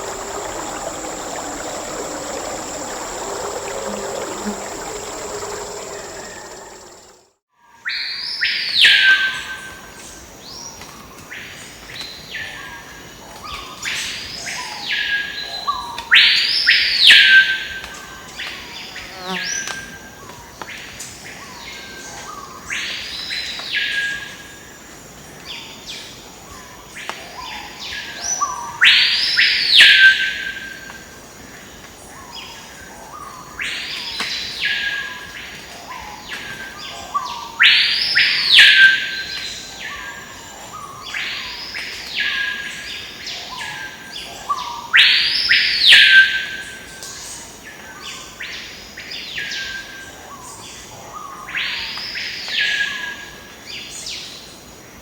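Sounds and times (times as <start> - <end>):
high insect drone: 0.0 - 7.3.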